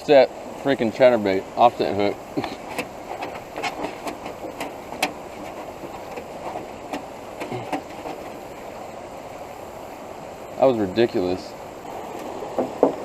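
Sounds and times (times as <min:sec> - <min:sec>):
fast-flowing creek water: 0:00.0 - 0:13.0
sharp clicks and knocks: 0:02.4 - 0:08.4, 0:12.1 - 0:13.0.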